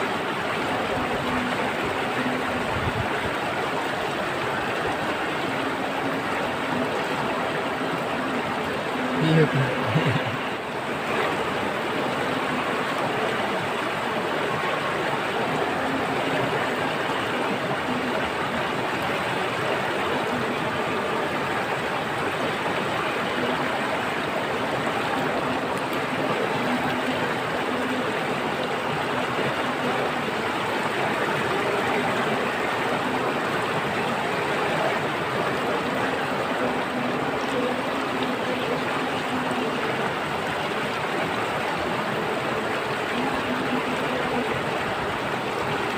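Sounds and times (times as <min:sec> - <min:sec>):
stream water rushing: 0:00.0 - 0:45.9.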